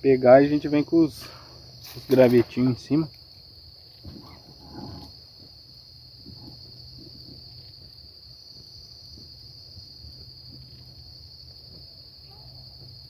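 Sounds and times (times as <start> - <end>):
insect chorus trilling: 0.0 - 13.0.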